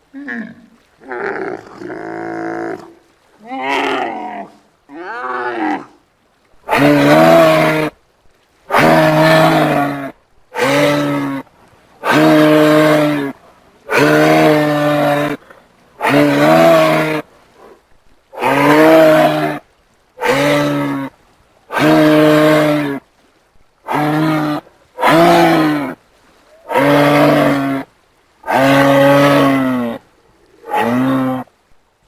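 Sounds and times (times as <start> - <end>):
animal mooing calls: 26.6 - 30.0, 30.6 - 31.5.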